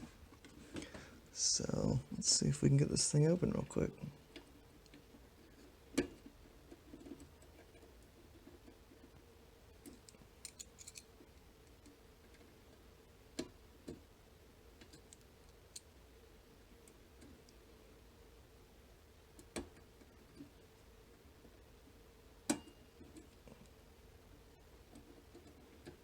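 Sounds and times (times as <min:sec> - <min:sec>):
metallic clicks of lock picking: 0:10.4 - 0:11.1.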